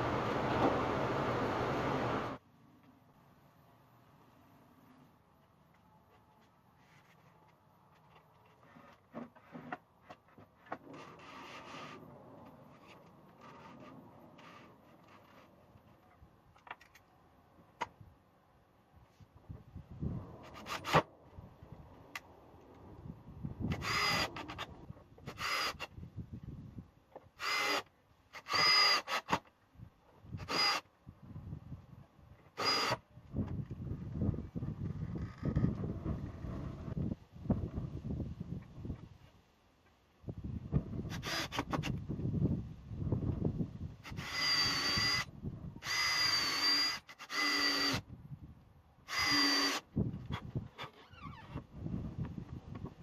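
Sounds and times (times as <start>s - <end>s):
power drill whining: 23.7s - 24.6s, 25.3s - 25.9s, 27.4s - 29.2s, 32.6s - 33.0s, 44.1s - 48.0s, 49.1s - 49.8s.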